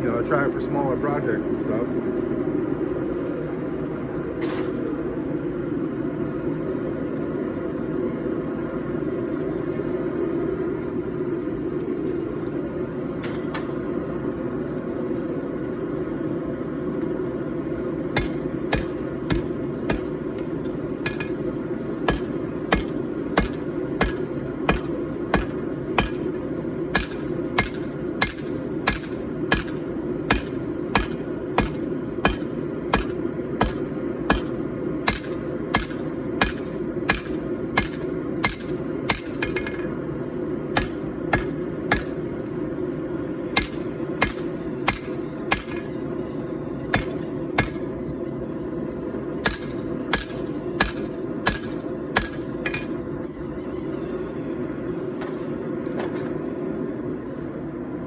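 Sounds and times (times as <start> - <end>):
gas forge burner rushing: 16.5 - 57.3
hammer blows on hot steel: 18.1 - 39.9, 40.7 - 42.4, 43.6 - 48.0, 49.4 - 53.0.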